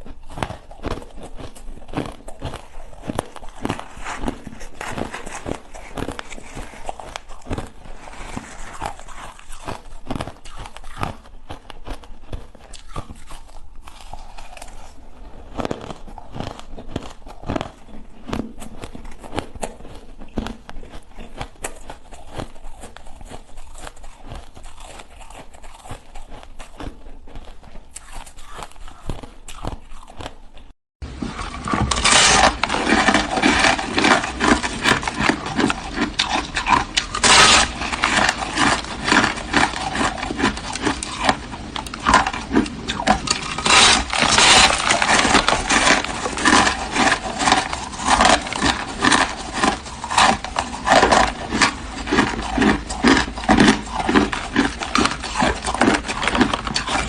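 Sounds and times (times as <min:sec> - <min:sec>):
ice being chewed: 0:00.0 - 0:57.0.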